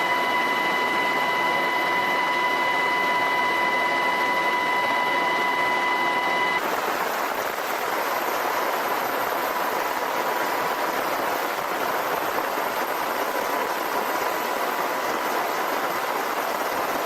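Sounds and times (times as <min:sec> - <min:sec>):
helicopter high whine: 0:00.0 - 0:09.8
helicopter running: 0:00.0 - 0:09.8.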